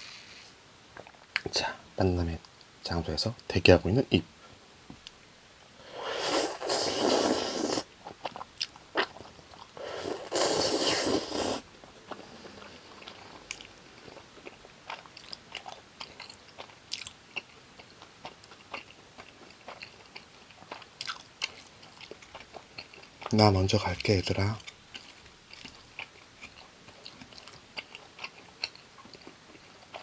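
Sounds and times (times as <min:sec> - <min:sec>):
chewing with small crunches: 0:06.2 - 0:30.0.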